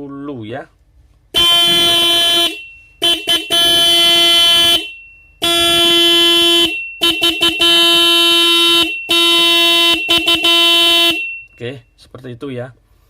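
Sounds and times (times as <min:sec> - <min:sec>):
horn blasts: 0:01.3 - 0:11.5.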